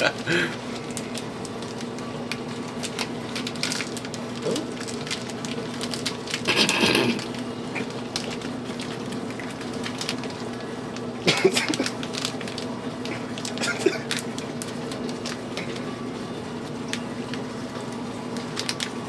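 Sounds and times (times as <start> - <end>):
faint steady hum: 0.0 - 19.0
snack packaging clicks and crackles: 0.4 - 19.0
crunching and rustling: 0.8 - 15.9.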